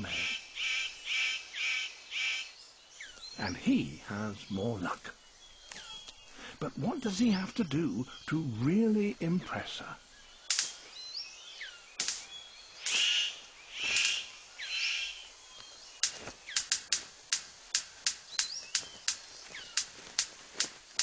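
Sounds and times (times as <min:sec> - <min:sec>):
harsh rasping bird calls: 0:00.0 - 0:21.0
sharp clicks: 0:10.5 - 0:10.8, 0:12.0 - 0:13.1, 0:16.0 - 0:21.0.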